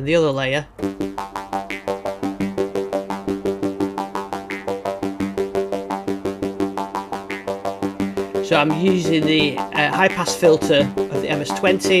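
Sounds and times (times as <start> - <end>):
synthesizer sequence notes: 0.7 - 12.0.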